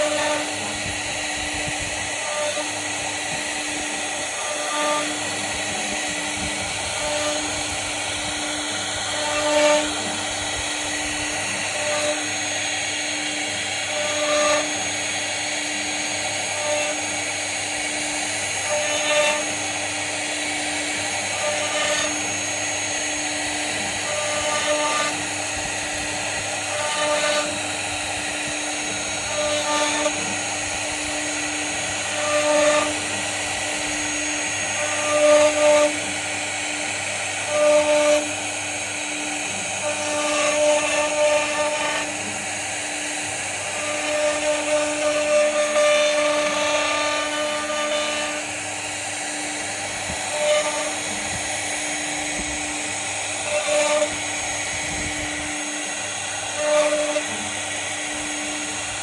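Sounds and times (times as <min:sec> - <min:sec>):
cnc router spindle whining: 0:00.0 - 0:59.0.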